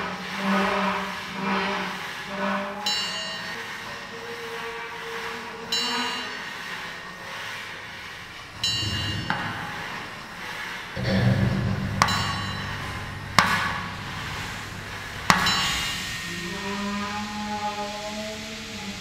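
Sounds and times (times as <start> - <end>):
low mechanical hum: 6.9 - 19.0
sharp metal knocks: 11.0 - 16.1
metal ringing clang: 11.0 - 17.1.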